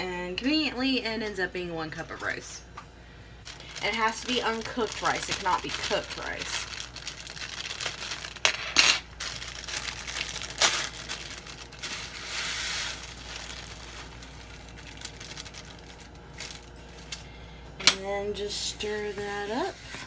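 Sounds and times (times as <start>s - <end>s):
plastic bag crinkling: 3.4s - 17.2s
rice pouring: 11.7s - 14.4s.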